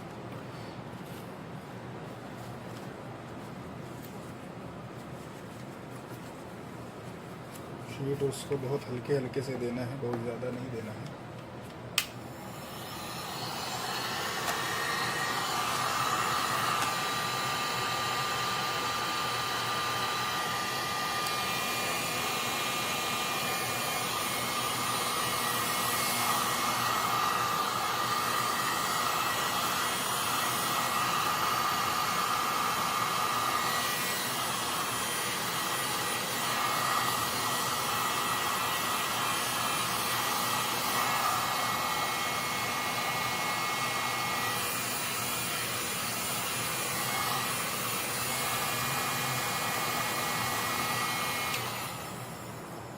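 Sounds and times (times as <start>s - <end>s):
faint steady whine: 0.0s - 52.9s
blower switch click: 12.0s - 12.2s, 14.4s - 14.7s
hot air blower rushing: 12.0s - 52.9s.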